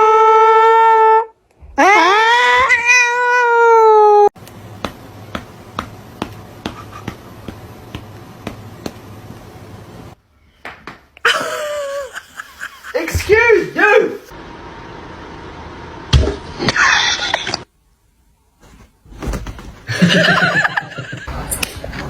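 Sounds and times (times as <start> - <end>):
cat meowing: 1.8 - 4.3.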